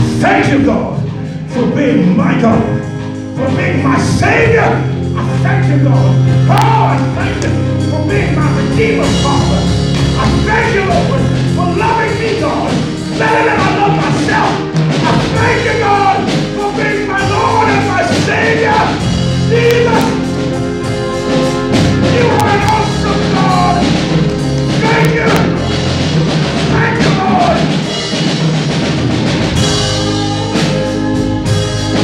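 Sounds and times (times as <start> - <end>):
drum kit: 0.0 - 32.0
sustained chords: 0.0 - 32.0
person singing: 29.6 - 32.0.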